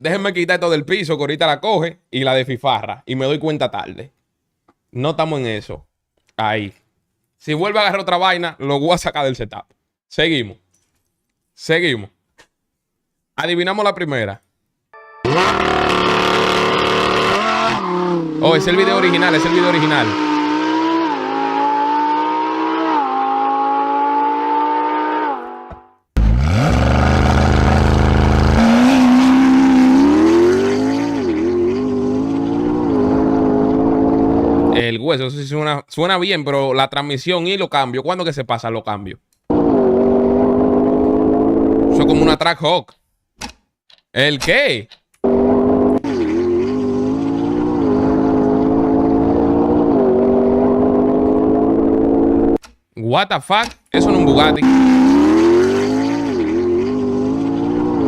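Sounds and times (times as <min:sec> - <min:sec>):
car engine accelerating: 0:15.2 - 0:34.7, 0:39.5 - 0:42.1, 0:45.2 - 0:52.6, 0:54.0 - 0:58.0.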